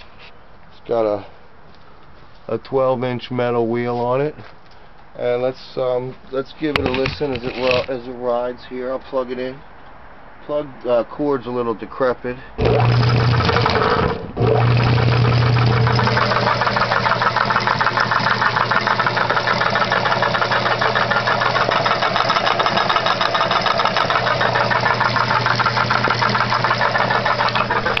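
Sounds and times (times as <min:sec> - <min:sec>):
electric motor humming: 0:12.6 - 0:28.0
machinery clattering: 0:12.6 - 0:28.0.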